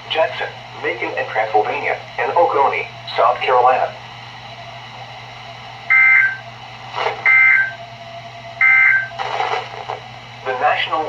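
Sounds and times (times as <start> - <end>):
static crackles: 0.2 - 11.0
two-tone digital data bursts: 5.9 - 6.4, 7.2 - 7.8, 8.6 - 9.3.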